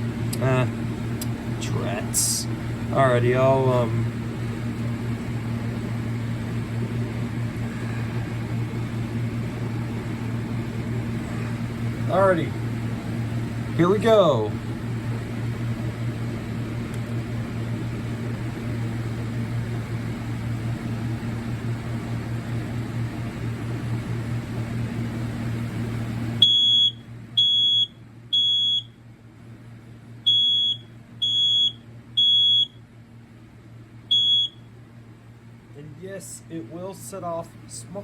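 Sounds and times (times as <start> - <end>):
low hum with hiss: 0.0 - 38.0
smoke alarm beeping: 26.4 - 29.0, 30.2 - 32.8, 34.1 - 34.7.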